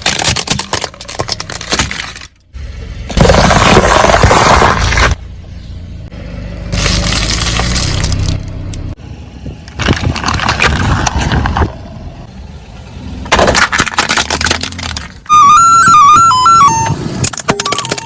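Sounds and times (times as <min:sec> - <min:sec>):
tyres crushing objects: 0:00.0 - 0:02.4, 0:03.1 - 0:05.2, 0:06.7 - 0:08.4, 0:09.7 - 0:11.8, 0:13.3 - 0:15.3
car engine hum: 0:00.0 - 0:17.4.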